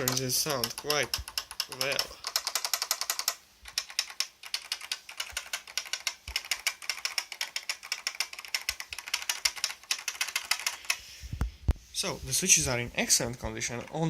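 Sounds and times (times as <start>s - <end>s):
clicky keyboard typing: 0.0s - 11.0s.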